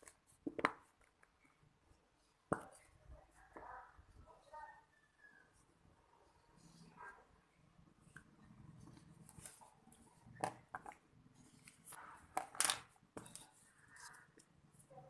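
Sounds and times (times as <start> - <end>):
handling rustles clicks and scrapes: 8.8 - 15.0.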